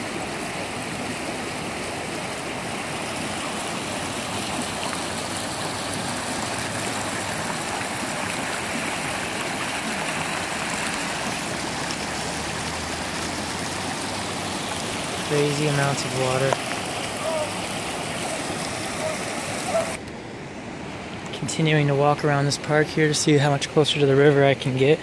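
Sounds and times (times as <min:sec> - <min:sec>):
floodwater rushing: 0:00.0 - 0:25.0.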